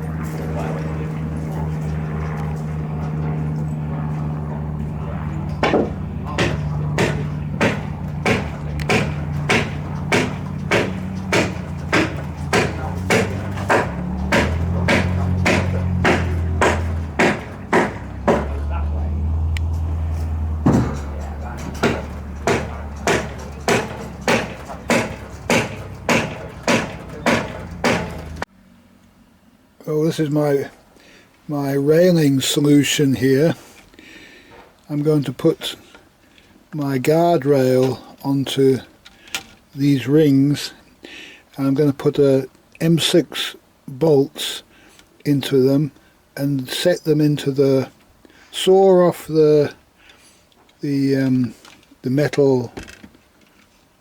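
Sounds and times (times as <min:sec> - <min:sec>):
low machine hum: 0:00.0 - 0:28.5
hammer blows: 0:05.2 - 0:28.5
sharp evenly spaced knocks: 0:05.6 - 0:18.7, 0:19.7 - 0:28.5.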